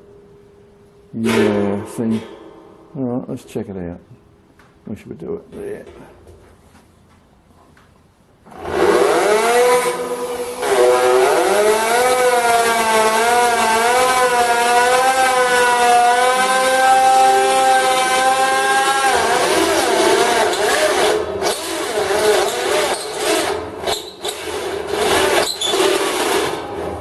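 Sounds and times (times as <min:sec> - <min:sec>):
person speaking: 0:02.9 - 0:04.2, 0:04.8 - 0:06.2
electric drill whining: 0:08.5 - 0:26.8.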